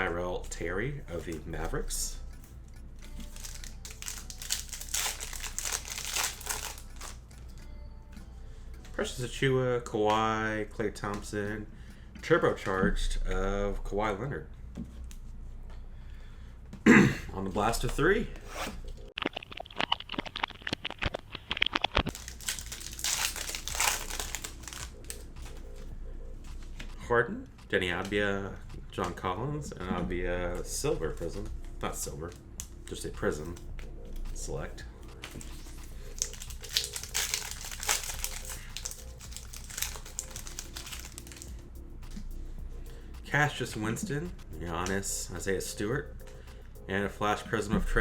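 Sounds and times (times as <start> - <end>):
plastic wrapping crinkling and tearing: 3.0 - 7.4, 19.2 - 25.8, 35.0 - 41.6.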